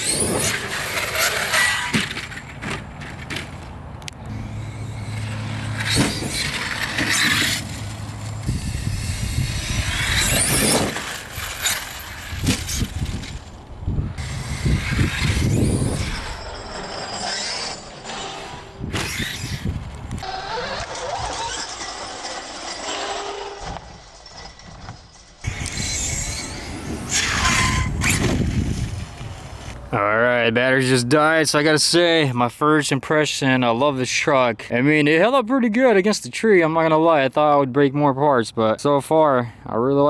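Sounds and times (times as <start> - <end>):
electric motor whining: 0.0 - 29.8
tyres churning on ground: 0.0 - 30.7.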